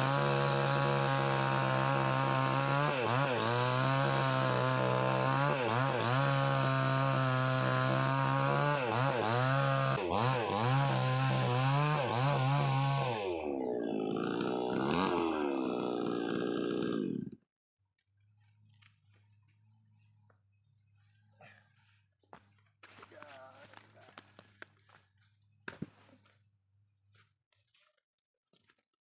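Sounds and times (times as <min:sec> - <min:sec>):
chainsaw running at high revs: 0:00.0 - 0:17.4.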